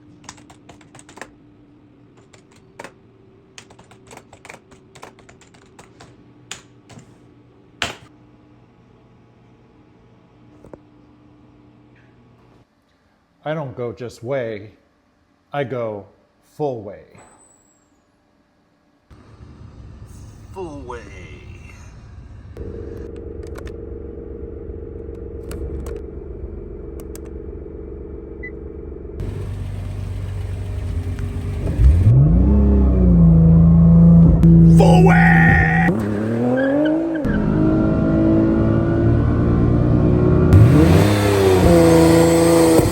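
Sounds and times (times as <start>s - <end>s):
car engine idling with low rumble: 19.1s - 35.0s.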